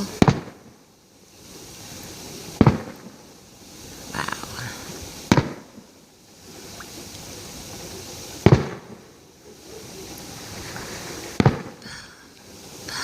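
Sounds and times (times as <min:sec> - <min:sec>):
firework booms with echo: 0:00.0 - 0:00.8, 0:02.6 - 0:03.3, 0:05.2 - 0:06.0, 0:08.4 - 0:09.2, 0:11.3 - 0:11.8.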